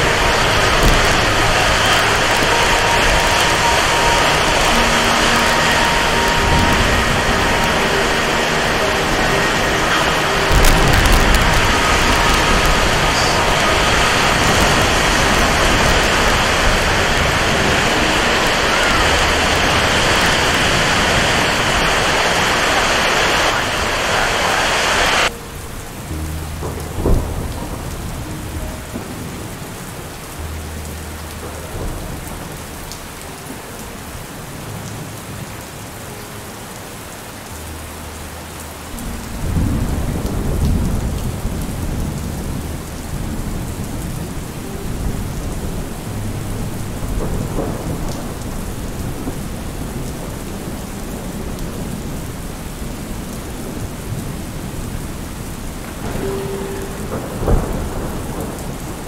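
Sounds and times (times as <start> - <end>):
heavy rain hissing: 0.0 - 59.0
light rain: 0.0 - 59.0
sharp crack: 0.7 - 3.7, 10.5 - 15.0.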